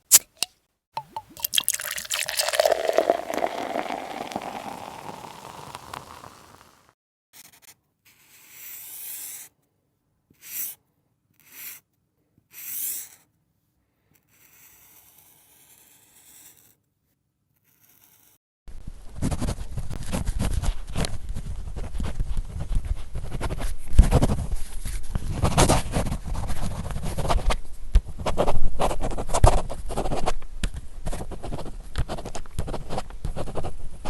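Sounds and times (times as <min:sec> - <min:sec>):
liquid pouring into container: 0:01.0 - 0:06.9.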